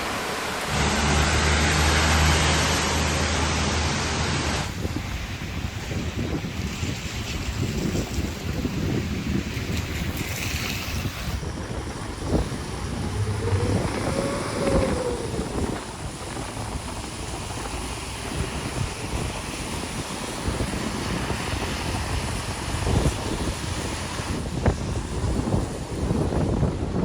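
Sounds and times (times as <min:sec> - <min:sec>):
storm wind buffeting microphone: 0:04.2 - 0:27.0
rising and falling tone: 0:12.2 - 0:16.2.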